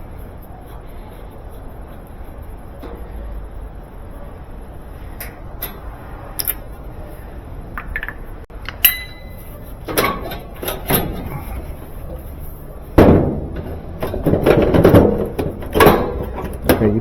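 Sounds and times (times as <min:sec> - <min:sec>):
metal parts and tools clattering: 0:05.2 - 0:06.7, 0:07.8 - 0:12.3, 0:13.0 - 0:17.0
metallic ring: 0:08.6 - 0:10.8.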